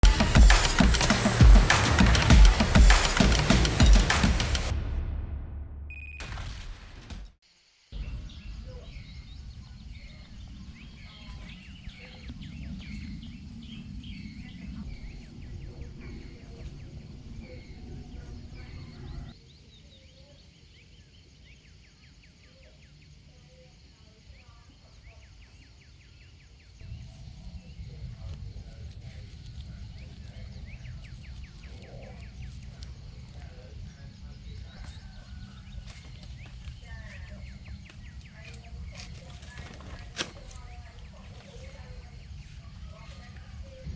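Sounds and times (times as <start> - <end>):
birds chirping: 0.0 - 4.7, 8.0 - 43.9
low rumble: 0.0 - 7.4
high insect drone: 7.4 - 43.9.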